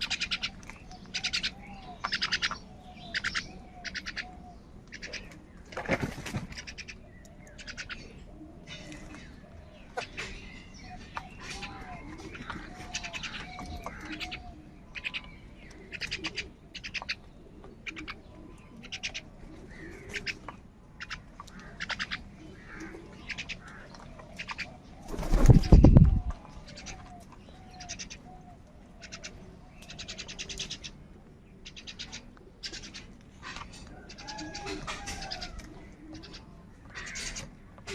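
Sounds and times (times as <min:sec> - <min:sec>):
crows cawing: 0:21.0 - 0:24.7, 0:36.9 - 0:37.6.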